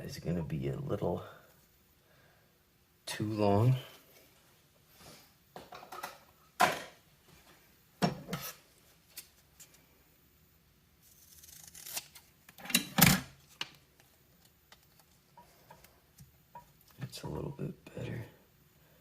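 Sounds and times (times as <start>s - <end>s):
tape being cut: 11.0s - 12.3s.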